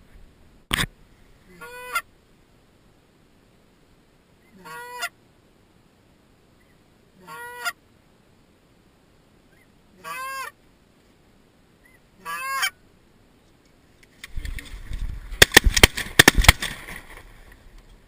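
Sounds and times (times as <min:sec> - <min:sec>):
goose honking: 0:01.5 - 0:02.1, 0:04.4 - 0:05.2, 0:07.2 - 0:07.8, 0:09.6 - 0:10.6, 0:11.8 - 0:12.8.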